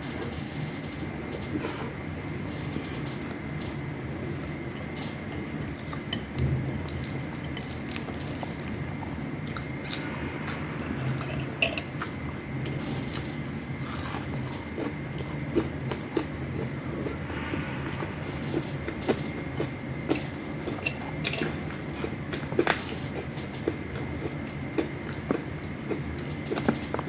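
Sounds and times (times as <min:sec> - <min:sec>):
low background hum: 0:00.0 - 0:27.0
chewing and crunching fried fish: 0:06.8 - 0:17.3, 0:18.0 - 0:27.0.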